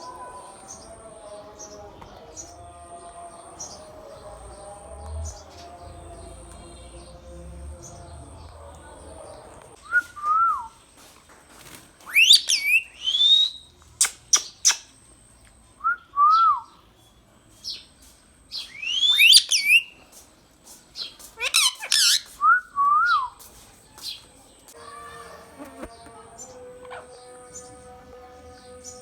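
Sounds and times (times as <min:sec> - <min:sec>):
parakeet whistled calls: 0:12.1 - 0:13.6, 0:18.8 - 0:19.9, 0:21.4 - 0:22.4.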